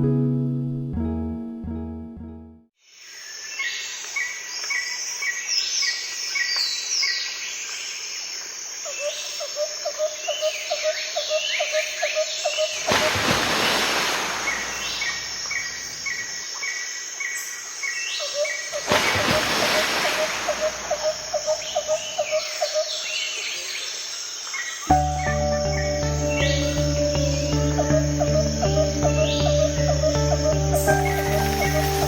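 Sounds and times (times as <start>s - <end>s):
birds chirping: 12.4s - 16.4s, 18.3s - 24.0s, 24.6s - 32.0s
steady outdoor hiss: 12.4s - 32.0s.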